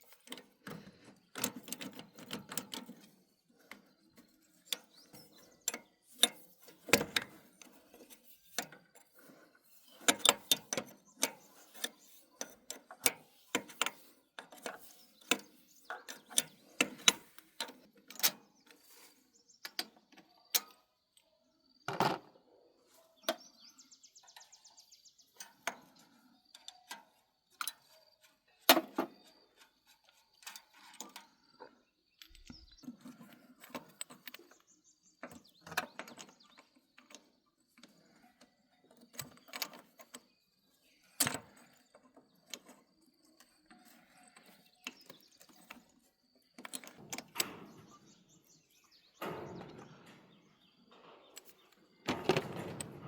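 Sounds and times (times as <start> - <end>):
metallic clicks and knocks: 0.1 - 9.2, 9.9 - 18.4, 43.4 - 53.0.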